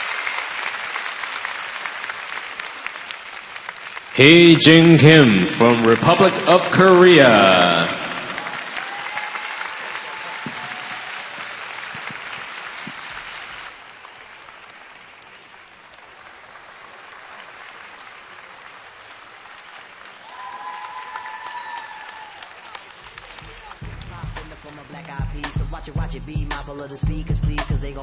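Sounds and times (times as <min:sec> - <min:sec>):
audience applauding: 0:00.0 - 0:26.1
voice calling out: 0:04.2 - 0:08.6.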